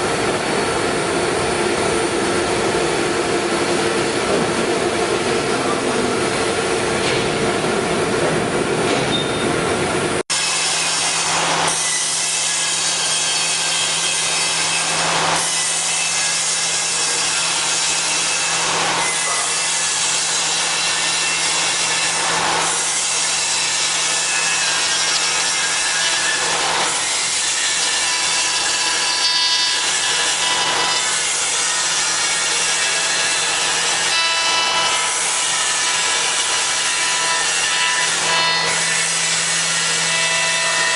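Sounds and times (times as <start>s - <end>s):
cnc router cutting wood: 10.3s - 40.9s.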